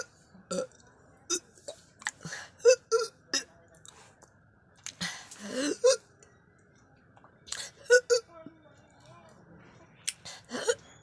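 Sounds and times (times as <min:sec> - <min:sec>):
person retching: 0:00.0 - 0:03.5.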